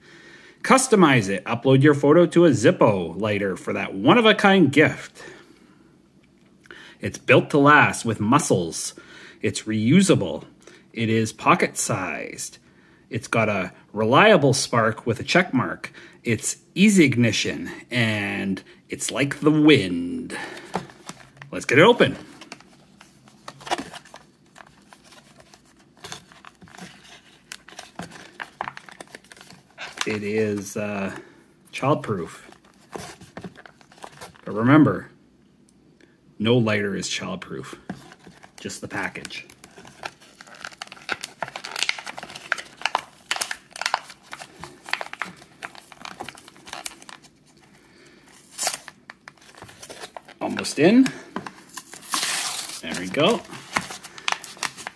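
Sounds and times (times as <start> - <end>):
plastic packaging crinkling and scraping: 20.3 - 31.2, 32.4 - 34.5, 37.8 - 54.9.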